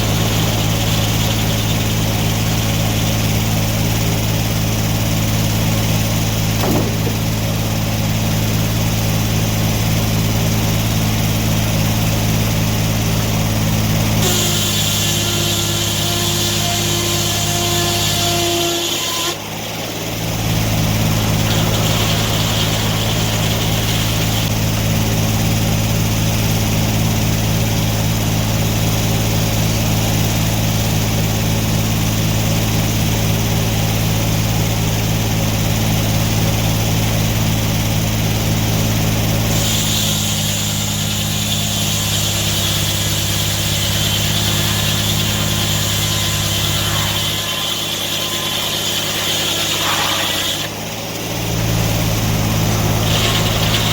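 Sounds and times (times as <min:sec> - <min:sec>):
engine running steadily: 0:00.0 - 0:53.9.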